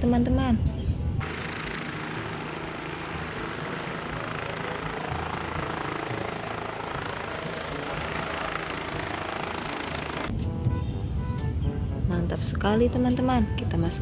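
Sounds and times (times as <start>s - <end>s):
helicopter rotor and engine: 1.2s - 10.3s.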